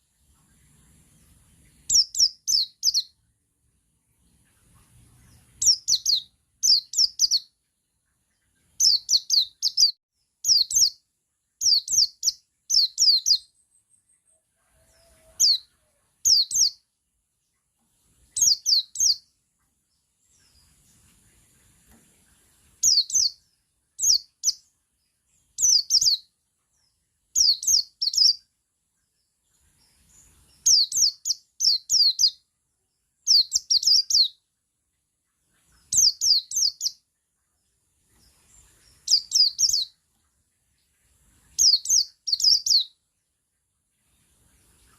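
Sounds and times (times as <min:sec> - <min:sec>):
bird singing high slurred notes: 0:01.6 - 0:03.2, 0:05.0 - 0:07.5, 0:18.4 - 0:19.3, 0:22.8 - 0:23.4, 0:38.5 - 0:39.9, 0:41.5 - 0:42.9.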